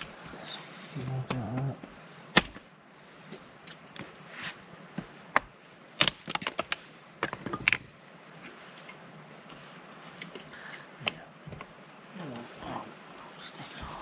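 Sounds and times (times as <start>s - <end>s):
firewood cracks and knocks: 2.3s - 2.7s, 5.3s - 8.0s.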